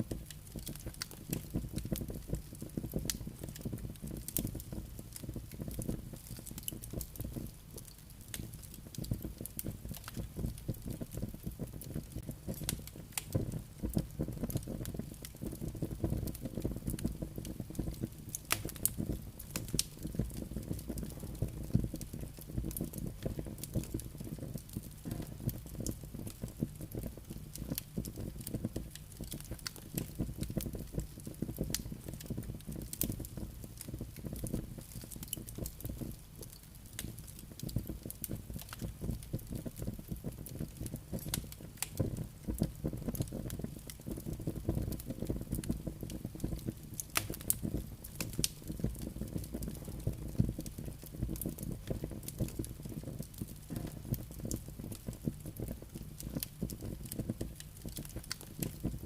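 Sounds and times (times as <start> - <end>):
campfire crackling: 0.0 - 59.0
fire popping and snapping: 0.0 - 59.0.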